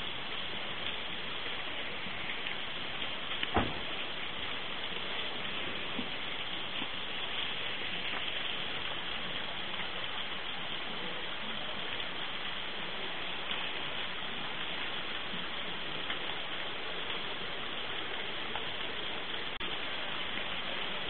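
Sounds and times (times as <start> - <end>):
small waterfall splashing: 0.0 - 21.0.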